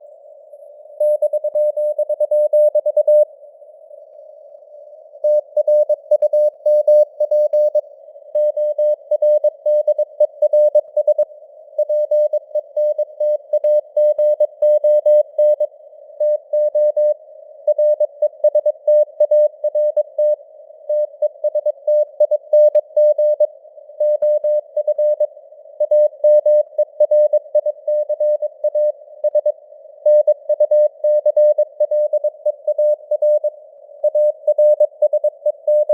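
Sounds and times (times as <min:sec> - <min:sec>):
faint radio hiss: 0:03.2 - 0:05.4, 0:15.7 - 0:16.2.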